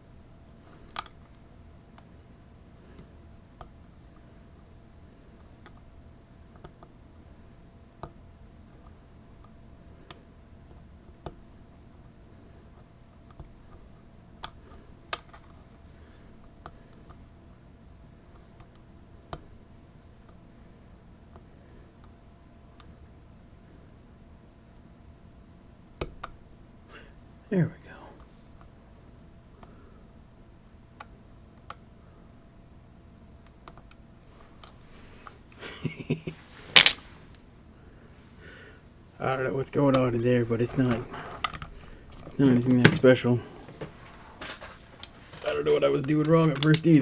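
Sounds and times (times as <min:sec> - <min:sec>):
lockpicking tools clicking: 0:36.7 - 0:37.0.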